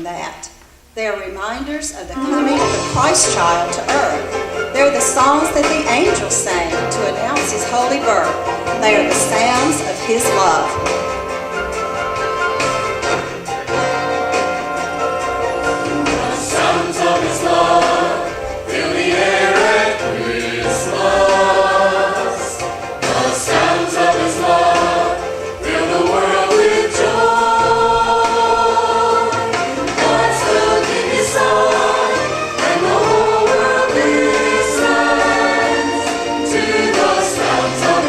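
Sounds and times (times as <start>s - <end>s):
steady low notes: 1.1s - 38.0s
choir singing sustained chords: 2.1s - 38.0s.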